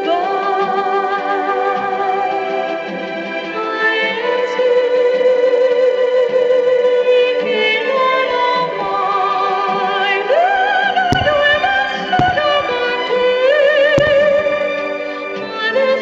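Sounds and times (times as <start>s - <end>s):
operatic music over loudspeakers: 0.0s - 16.0s
firework bangs: 11.0s - 15.2s.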